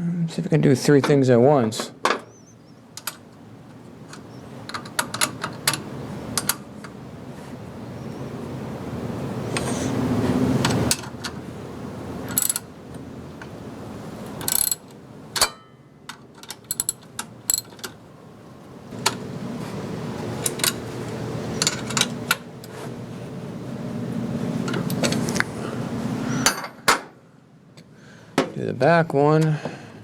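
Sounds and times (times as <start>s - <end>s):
metal clank: 15.4s - 15.8s.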